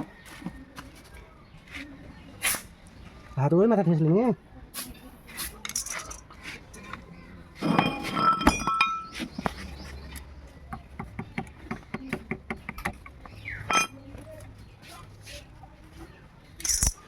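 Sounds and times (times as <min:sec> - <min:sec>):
metal tools clinking and clattering: 0:05.6 - 0:07.0, 0:07.6 - 0:09.4, 0:13.6 - 0:14.1, 0:16.6 - 0:17.0.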